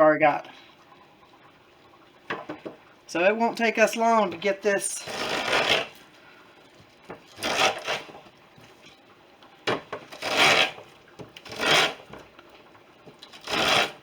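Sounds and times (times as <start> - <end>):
corn kernels rasping off cob: 5.0 - 6.0, 7.3 - 8.2, 10.0 - 12.2, 13.2 - 14.0.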